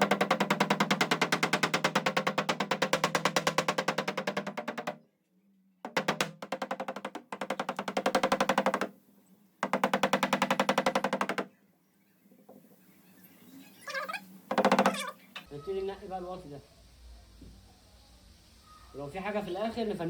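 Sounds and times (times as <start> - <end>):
rapid tapping on sheet metal: 0.0 - 5.0, 5.9 - 8.9, 9.6 - 11.5.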